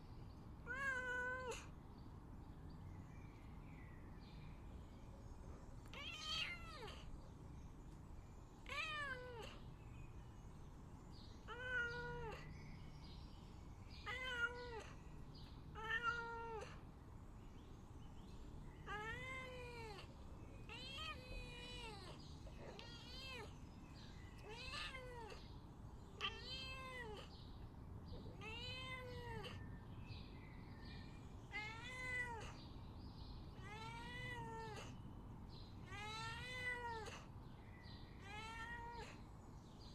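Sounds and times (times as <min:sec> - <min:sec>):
cat meowing: 0:00.7 - 0:01.7, 0:05.9 - 0:07.1, 0:08.6 - 0:09.6, 0:11.5 - 0:12.5, 0:14.0 - 0:15.0, 0:15.8 - 0:16.8, 0:18.8 - 0:20.1, 0:20.7 - 0:23.6, 0:24.4 - 0:25.5, 0:26.2 - 0:27.3, 0:28.2 - 0:29.7, 0:31.5 - 0:32.6, 0:33.6 - 0:35.0, 0:35.8 - 0:37.3, 0:38.2 - 0:39.2.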